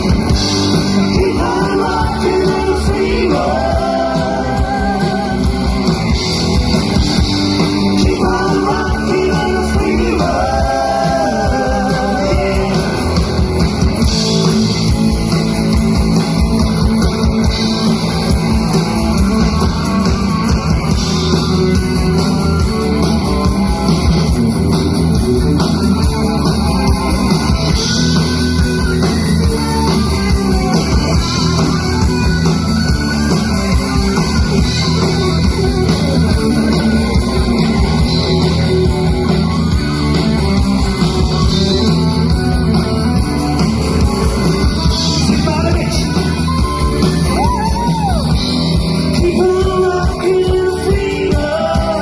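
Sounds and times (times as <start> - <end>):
rock band playing live: 0.0 - 52.0
person singing: 0.9 - 5.7, 7.9 - 13.3, 44.8 - 47.7, 49.0 - 52.0.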